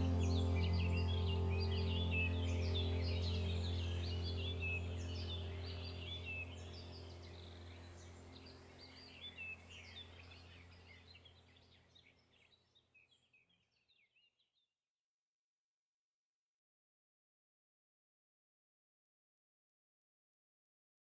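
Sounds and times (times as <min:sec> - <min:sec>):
steady low hum: 0:00.0 - 0:10.6
forest birds chirping: 0:00.0 - 0:14.4.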